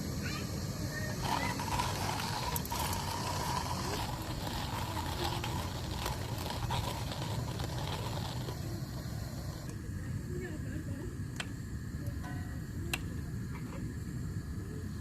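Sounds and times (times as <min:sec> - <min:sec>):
hand-cranked coffee grinder grinding: 0:01.1 - 0:09.7
grinder clicks: 0:01.2 - 0:09.8.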